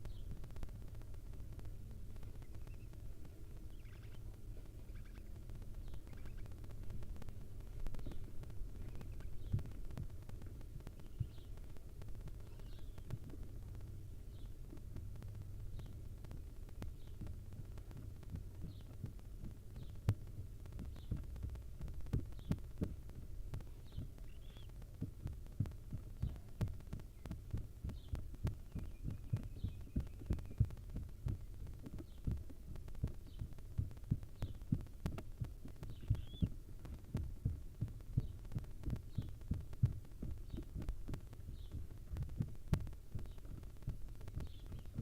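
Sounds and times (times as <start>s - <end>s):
low steady hum: 0.0s - 45.0s
soft low thumping: 0.0s - 45.0s
faint high chirps: 35.9s - 36.6s.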